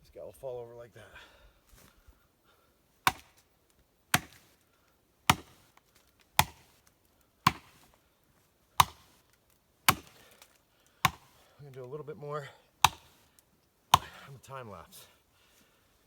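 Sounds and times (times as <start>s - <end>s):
axe chopping tree trunk: 3.0s - 3.4s, 4.1s - 4.6s, 5.3s - 5.7s, 6.4s - 6.8s, 7.4s - 8.0s, 8.8s - 9.2s, 9.8s - 11.5s, 12.8s - 13.2s, 13.9s - 14.3s.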